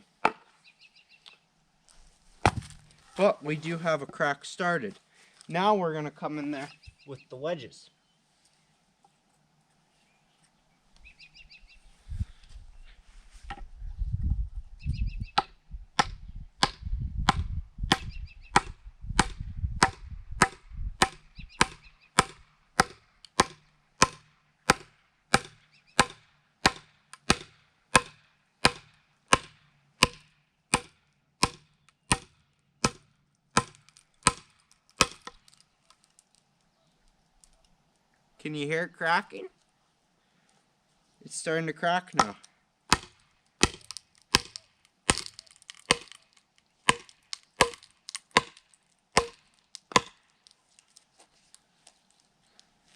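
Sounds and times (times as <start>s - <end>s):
sledgehammer knocking wooden wedges: 2.4s - 2.9s, 15.4s - 35.6s, 42.2s - 46.2s, 46.9s - 50.2s.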